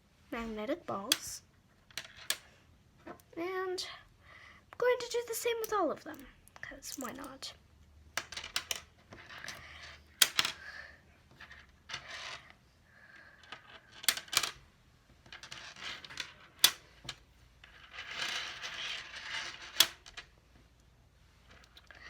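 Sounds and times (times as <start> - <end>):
magnet balls rolling and rattling: 0.4 - 3.4, 4.8 - 22.0
magnet balls clicking together: 5.5 - 7.6, 10.2 - 10.7.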